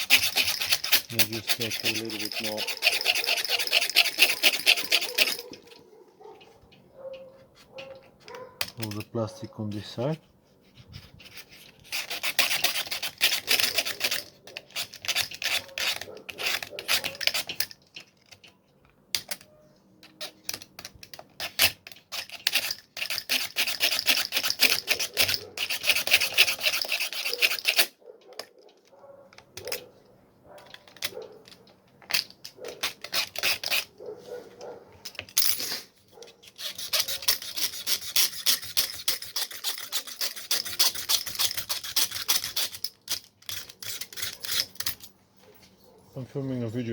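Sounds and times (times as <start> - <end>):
plastic scraping rasps: 0.0 - 5.8, 10.8 - 18.6, 30.6 - 33.9.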